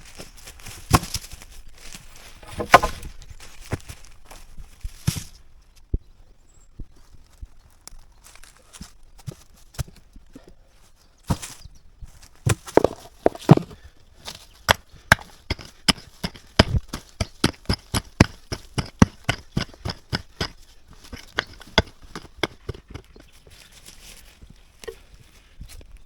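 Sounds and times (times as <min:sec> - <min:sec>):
sharp knocks and crunches: 0:00.1 - 0:05.4, 0:12.3 - 0:24.2.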